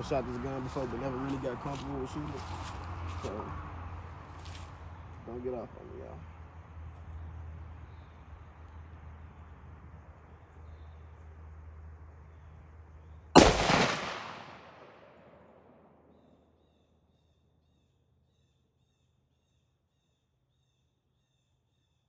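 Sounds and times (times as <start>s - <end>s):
rifle shot: 13.4s - 15.8s.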